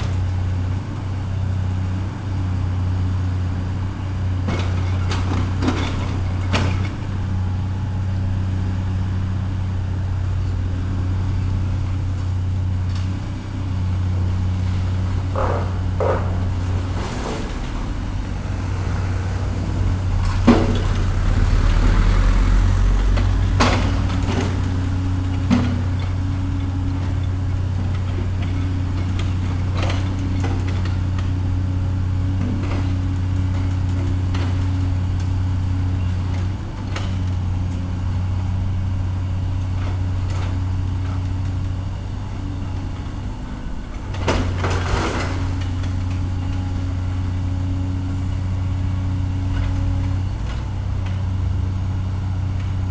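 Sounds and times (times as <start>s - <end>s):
diesel engine running: 0.0s - 52.9s
sharp knocks and clanks: 15.3s - 17.8s.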